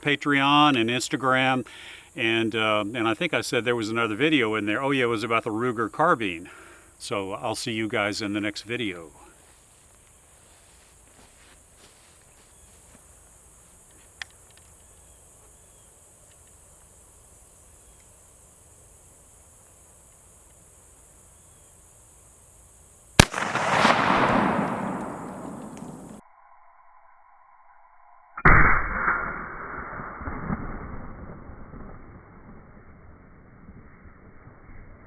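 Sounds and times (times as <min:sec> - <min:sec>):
high insect buzz: 0:09.3 - 0:23.2
small click: 0:14.2 - 0:15.1
rifle shot: 0:23.2 - 0:26.2, 0:28.5 - 0:31.2.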